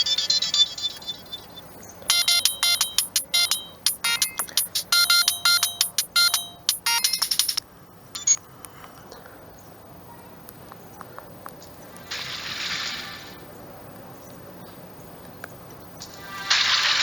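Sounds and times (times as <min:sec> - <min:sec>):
mobile phone ringtone melody: 0:02.1 - 0:07.6.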